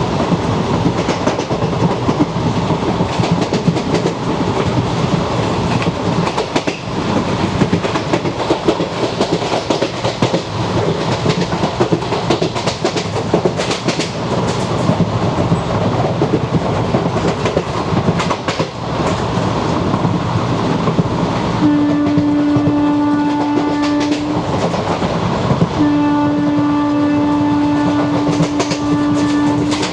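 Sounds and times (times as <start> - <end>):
train wheels clattering over rails: 0.0 - 29.9
sharp clacks at rail joints: 0.1 - 25.9, 26.6 - 29.9
locomotive horn: 21.6 - 24.4, 25.8 - 29.9.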